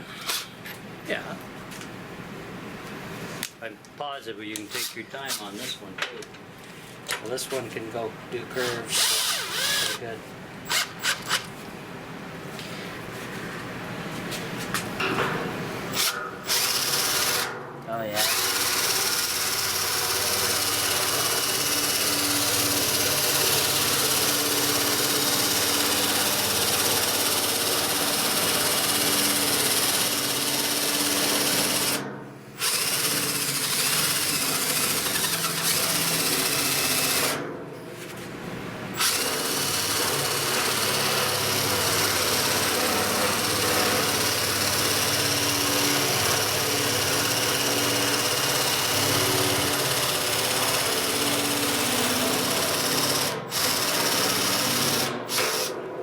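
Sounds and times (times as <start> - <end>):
power cutter cutting sheet metal: 8.6 - 10.0, 18.1 - 32.0, 32.6 - 37.4, 39.0 - 55.8.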